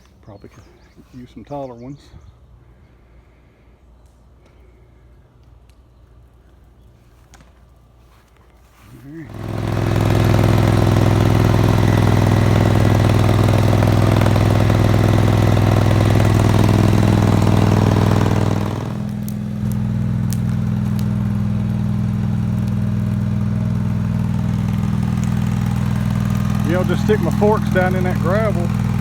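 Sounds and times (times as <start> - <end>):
garden tractor engine running: 6.2 - 29.0.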